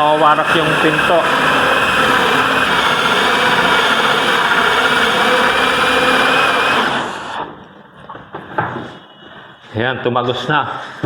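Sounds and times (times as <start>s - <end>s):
electric drill boring through door: 0.0s - 7.7s.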